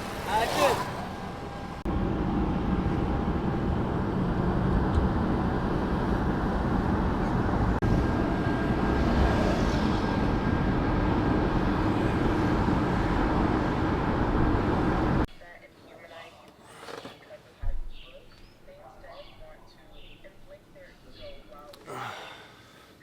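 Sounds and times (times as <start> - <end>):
vehicle engine and road rumble: 0.0 - 15.4.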